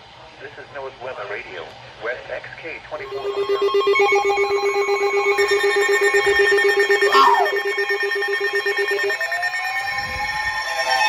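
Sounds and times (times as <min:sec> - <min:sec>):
higher steady tones: 0:03.0 - 0:11.0
rapidly pulsing low tone: 0:03.0 - 0:11.0.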